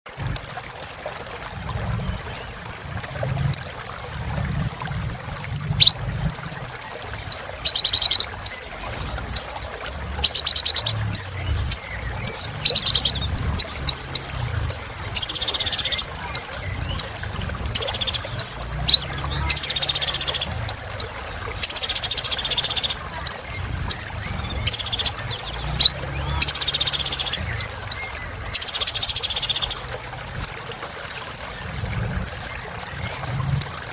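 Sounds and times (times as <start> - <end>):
sunbird singing: 0.3 - 8.6, 9.3 - 33.9
buzzy bird trills: 9.3 - 31.6.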